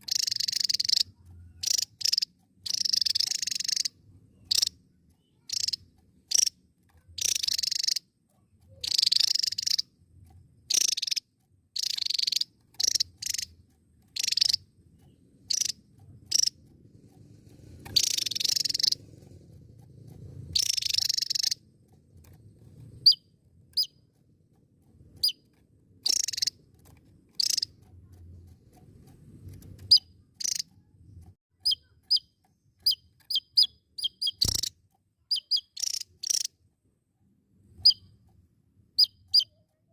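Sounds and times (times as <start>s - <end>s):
bird singing buzzy notes: 35.3s - 36.5s.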